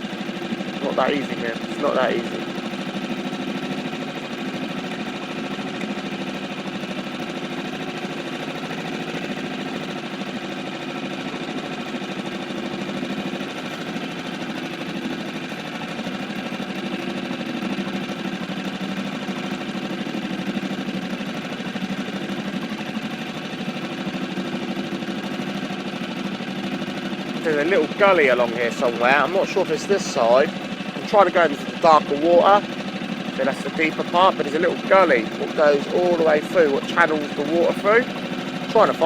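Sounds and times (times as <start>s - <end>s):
small outboard motor running: 0.0s - 39.0s.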